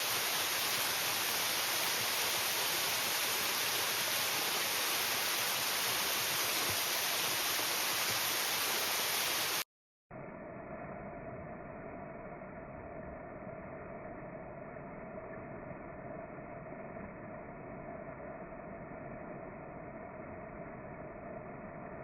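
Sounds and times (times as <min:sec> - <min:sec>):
waterfall rushing: 0:00.0 - 0:09.6.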